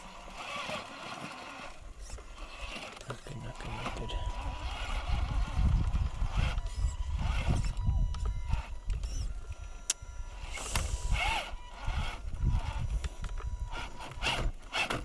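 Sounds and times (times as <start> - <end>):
electric motor whining: 0.0 - 15.0
wind buffeting microphone: 3.4 - 14.8
sharp click: 9.9 - 11.1.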